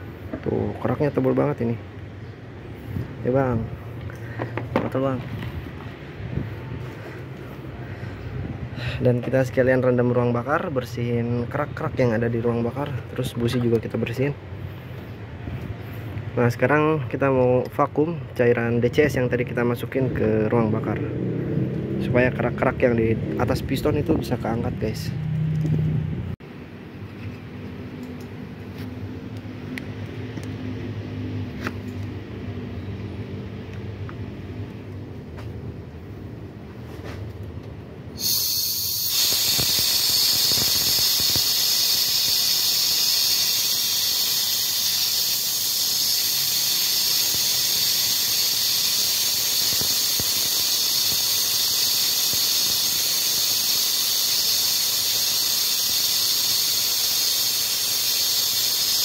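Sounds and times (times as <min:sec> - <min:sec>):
vacuum tool hissing: 0:38.2 - 0:59.0.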